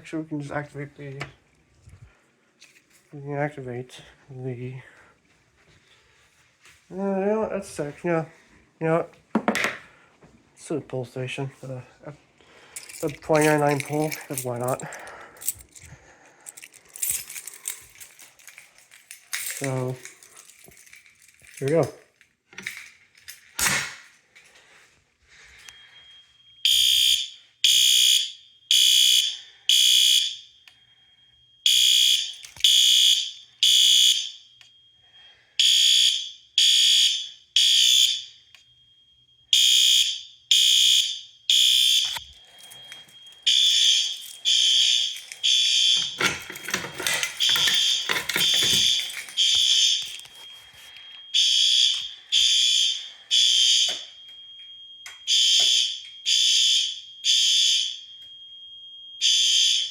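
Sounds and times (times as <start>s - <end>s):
fire alarm horns beeping: 24.6s - 59.9s.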